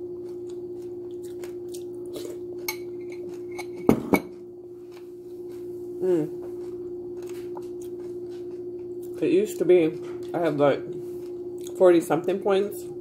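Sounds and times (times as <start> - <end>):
steady low hum: 0.0 - 13.0
spoon clinking in a bowl: 2.7 - 4.3.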